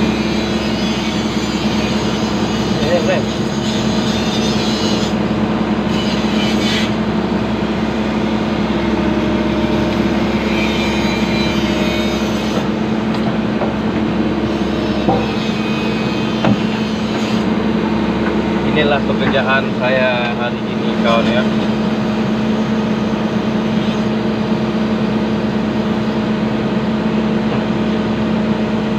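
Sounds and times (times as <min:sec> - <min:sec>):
excavator diesel engine running: 0:00.0 - 0:28.9
short knocks: 0:15.0 - 0:15.4, 0:16.4 - 0:17.4.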